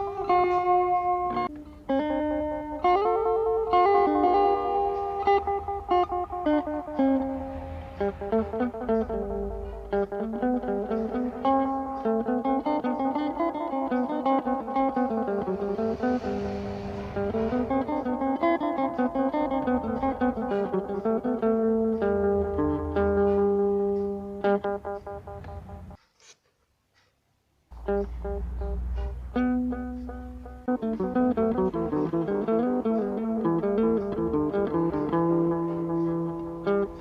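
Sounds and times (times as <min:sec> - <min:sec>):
electric guitar with delay: 0:00.0 - 0:26.0, 0:27.8 - 0:37.0
brief hiss: 0:14.8 - 0:19.3.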